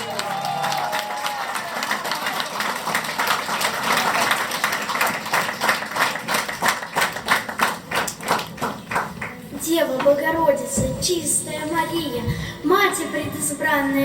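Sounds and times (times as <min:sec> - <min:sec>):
small group applauding: 0:00.0 - 0:09.4.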